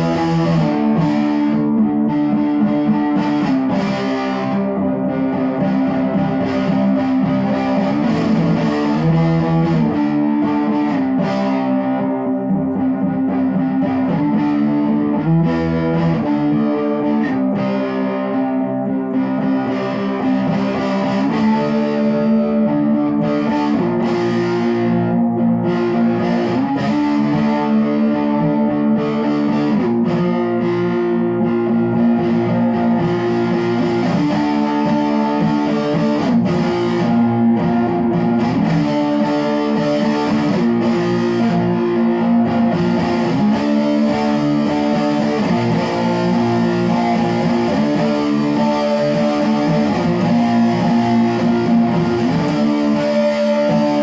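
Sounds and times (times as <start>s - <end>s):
guitar chords ringing: 0.0s - 54.0s.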